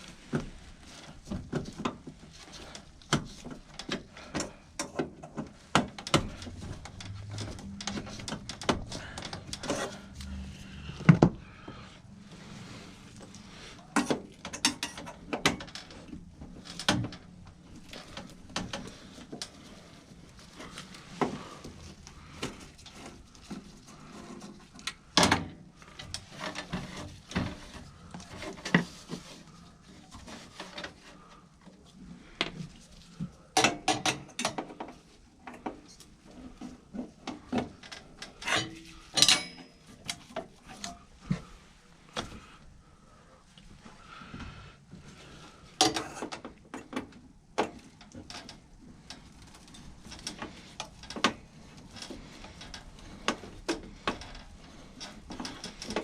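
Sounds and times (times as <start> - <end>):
hand tools clicking and rattling: 37.6 - 41.0.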